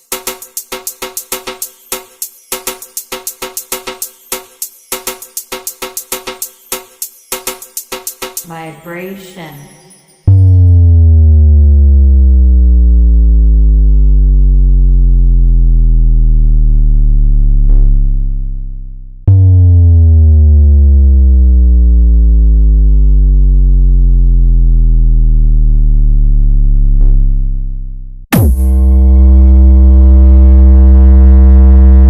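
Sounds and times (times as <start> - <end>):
deep synthesizer sub-bass: 10.3 - 32.0.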